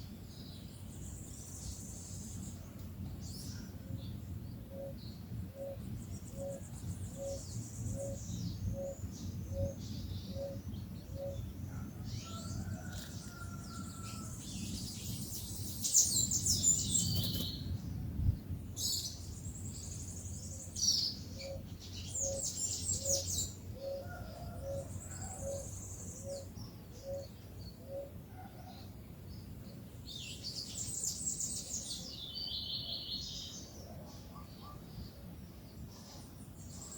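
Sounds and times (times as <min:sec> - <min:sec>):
songbirds chirping: 0:00.0 - 0:36.9
bird cooing: 0:08.0 - 0:10.6, 0:11.2 - 0:11.4, 0:22.2 - 0:28.8.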